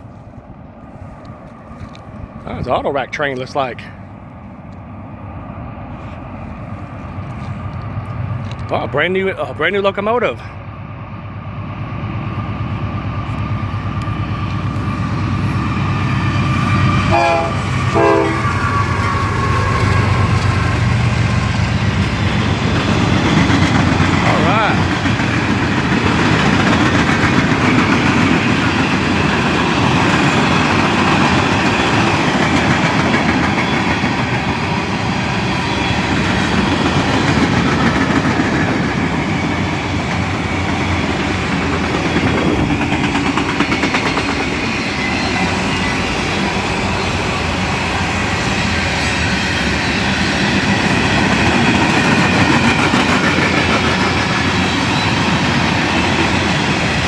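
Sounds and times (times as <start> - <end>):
freight train wheels clattering: 13.1 - 57.0.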